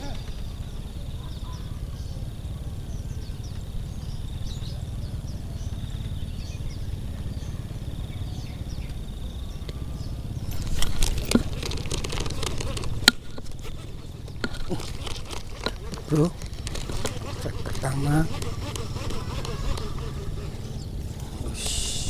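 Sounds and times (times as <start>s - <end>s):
small birds chirping: 0.0s - 22.0s
steady high buzz: 0.0s - 22.0s
rustling and sharp clicks: 10.5s - 21.4s.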